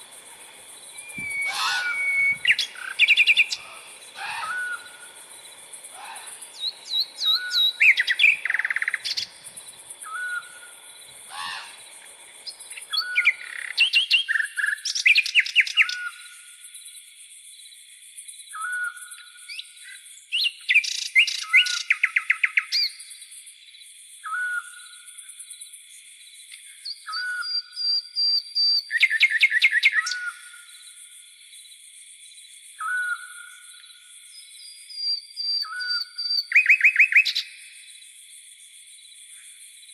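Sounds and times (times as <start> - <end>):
insect drone: 0.0 - 39.9
bird whistles: 0.9 - 5.1, 6.1 - 9.3, 10.0 - 10.7, 35.0 - 37.4
bird trills: 0.9 - 5.2, 5.9 - 9.4
bird repeating short call: 1.0 - 5.1, 11.3 - 11.8.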